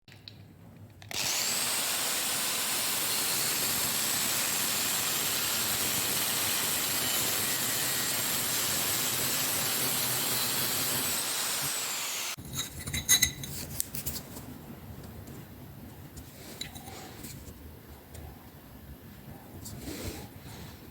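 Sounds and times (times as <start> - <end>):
angle grinder whining and grinding: 1.1 - 12.4.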